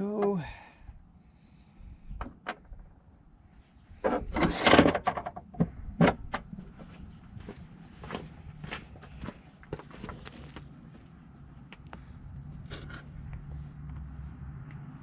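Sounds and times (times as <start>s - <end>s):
tools scraping and clattering: 4.0s - 5.5s, 12.6s - 13.2s.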